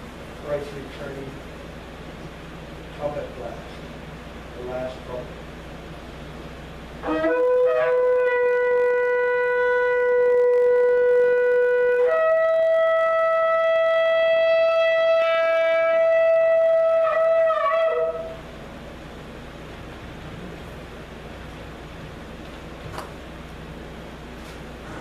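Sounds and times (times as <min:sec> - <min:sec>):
shofar blast: 0:07.0 - 0:18.5.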